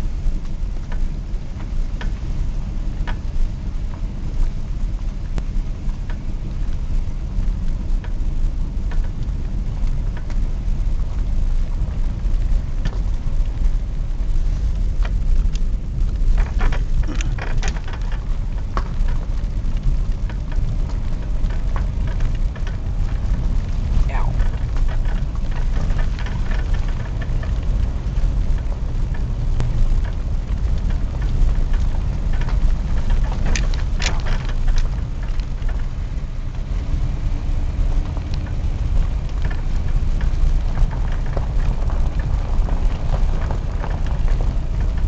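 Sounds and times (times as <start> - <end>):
car driving rumble inside cabin: 0.0 - 45.0
light ticks: 3.0 - 4.6, 5.2 - 36.9.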